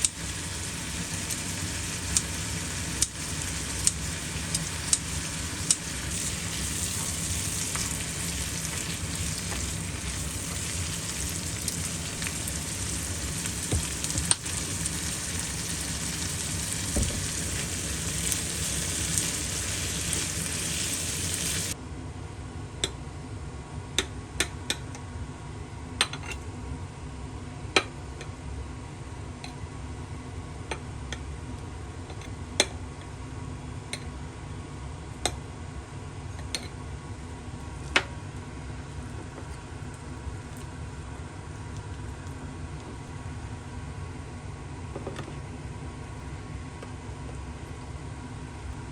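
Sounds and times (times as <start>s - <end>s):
food sizzling in a pan: 0.0s - 21.8s.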